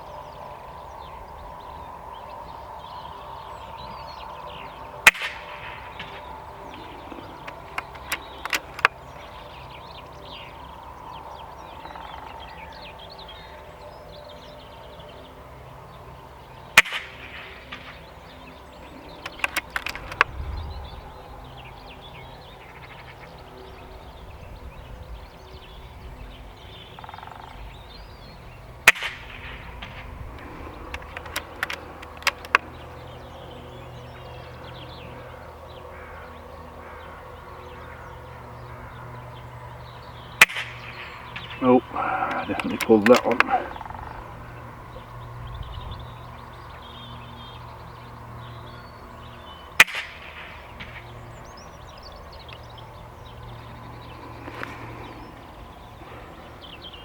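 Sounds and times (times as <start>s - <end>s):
faint birds chirping: 0.0s - 57.0s
air rifle shots: 5.1s - 6.3s, 7.4s - 9.0s, 16.8s - 18.1s, 19.1s - 20.4s, 28.8s - 32.7s, 40.4s - 44.0s, 49.8s - 51.1s
rifle lever clicks: 7.4s - 8.9s, 19.2s - 20.3s, 30.8s - 32.6s.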